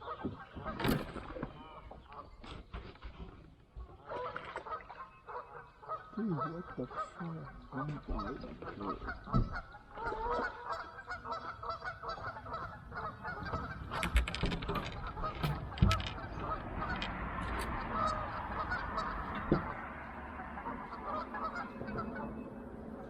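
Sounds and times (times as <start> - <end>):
geese honking: 0.0 - 0.9, 4.0 - 23.0
dull knocks: 9.3 - 9.7, 19.0 - 19.8.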